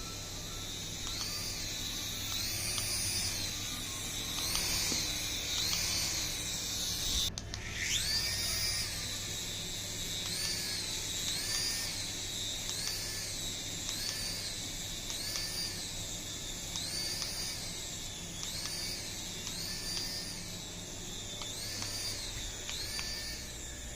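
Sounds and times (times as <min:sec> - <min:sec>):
toy helicopter motors whining: 0:00.0 - 0:23.9.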